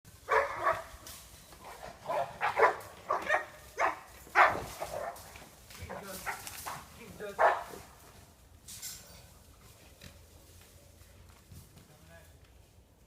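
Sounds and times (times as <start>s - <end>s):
dog barking sharply: 0.3s - 0.9s, 2.1s - 5.1s, 7.4s - 7.8s.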